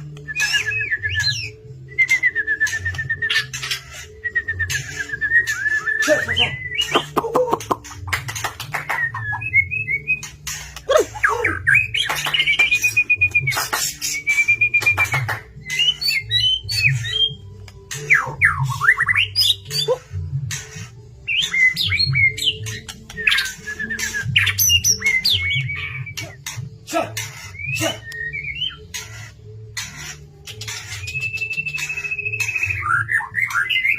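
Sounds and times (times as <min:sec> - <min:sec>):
bird singing varied song: 0:00.0 - 0:33.9.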